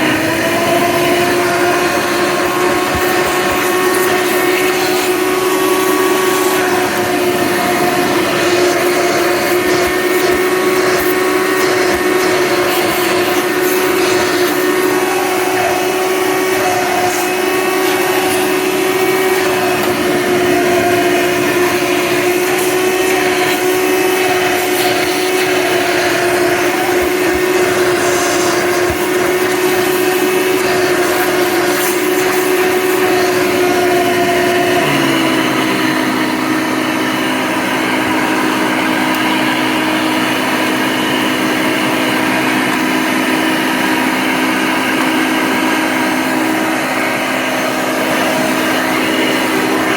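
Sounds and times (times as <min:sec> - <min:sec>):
vacuum cleaner running: 0:00.0 - 0:49.9.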